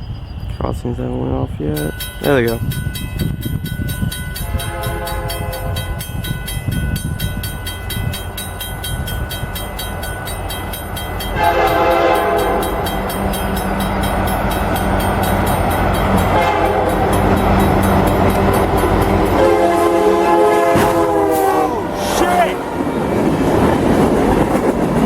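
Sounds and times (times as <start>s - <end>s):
railroad crossing bell ringing: 0.0s - 23.4s
locomotive rumbling: 0.0s - 25.0s
train horn blast: 4.4s - 6.0s, 11.3s - 13.0s, 16.1s - 22.7s.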